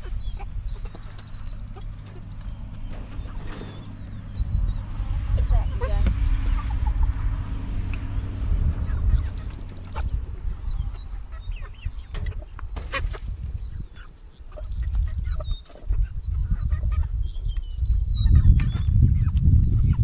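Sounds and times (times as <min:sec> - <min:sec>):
low rumble: 0:00.0 - 0:13.9
chickens chirping and clucking: 0:00.0 - 0:20.0.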